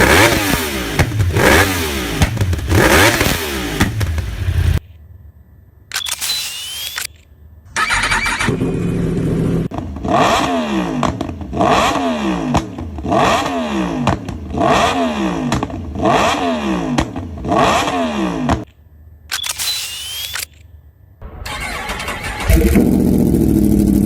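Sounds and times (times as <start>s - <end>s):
motorcycle engine idling and revving: 0.0s - 4.8s, 8.0s - 18.7s, 21.5s - 24.0s.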